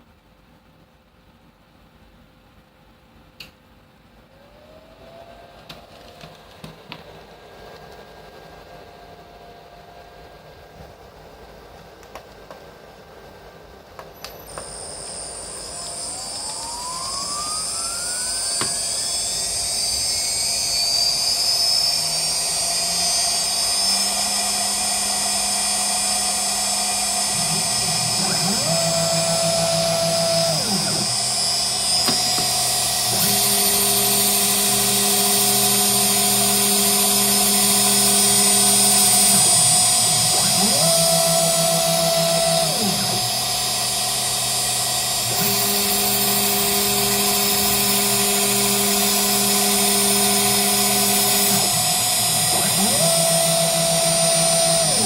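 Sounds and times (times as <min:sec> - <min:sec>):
router spindle whine: 0:04.3 - 0:10.6, 0:13.4 - 0:55.0
stepper motors humming: 0:14.0 - 0:55.0.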